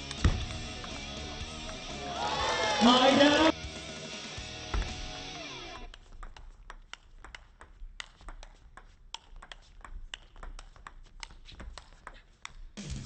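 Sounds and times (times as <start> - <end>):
music: 0.0 - 5.9, 12.8 - 13.0
table tennis ball clicks: 5.9 - 12.6.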